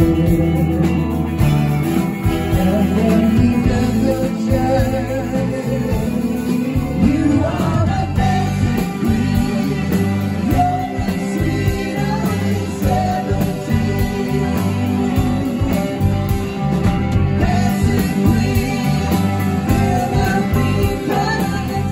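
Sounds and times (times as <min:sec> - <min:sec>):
person singing: 0:00.0 - 0:16.5, 0:17.4 - 0:21.9
live rock band playing: 0:00.0 - 0:21.9.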